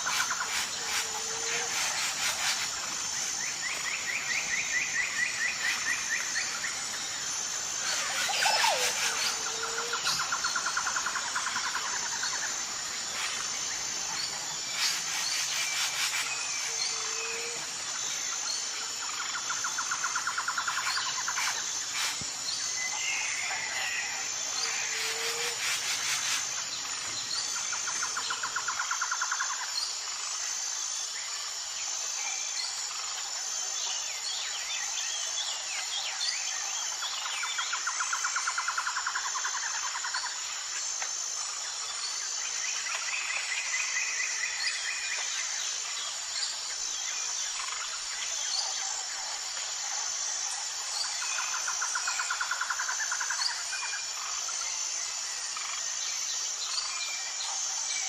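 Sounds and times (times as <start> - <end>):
high-pitched insect drone: 0.0 - 58.0
rapid bird trills: 7.8 - 11.0
bird calls: 7.8 - 11.2.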